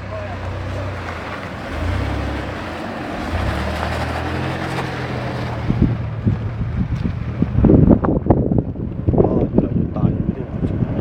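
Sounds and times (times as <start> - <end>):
car engine running at low revs: 0.0 - 11.0
wind noise on microphone: 3.2 - 11.0.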